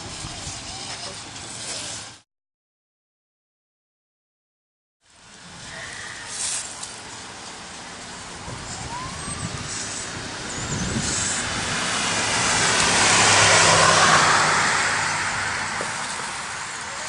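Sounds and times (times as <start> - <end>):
vehicle passing by: 5.3 - 17.0.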